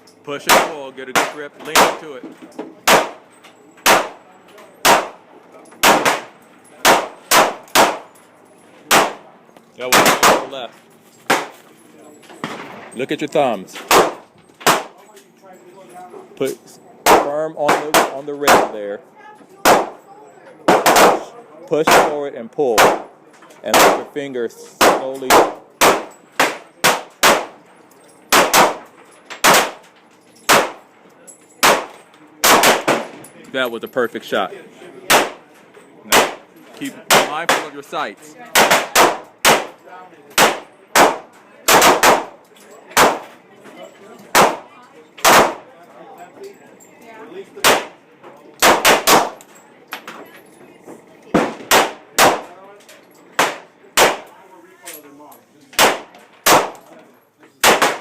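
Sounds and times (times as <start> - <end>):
handgun shots: 0.4 - 2.1, 2.8 - 3.2, 3.8 - 4.2, 4.8 - 5.2, 5.8 - 8.1, 8.9 - 9.2, 9.9 - 10.5, 11.3 - 11.6, 13.8 - 15.0, 17.0 - 18.8, 19.6 - 20.0, 20.7 - 21.3, 21.9 - 22.2, 22.8 - 23.1, 23.7 - 24.1, 24.8 - 27.6, 28.3 - 28.8, 29.4 - 29.8, 30.5 - 30.8, 31.6 - 33.1, 35.1 - 35.4, 36.1 - 36.4, 38.5 - 39.8, 40.4 - 43.4, 44.3 - 45.7, 47.6 - 48.0, 48.6 - 49.5, 51.3 - 52.5, 53.4 - 54.4, 55.8 - 56.8, 57.6 - 58.0.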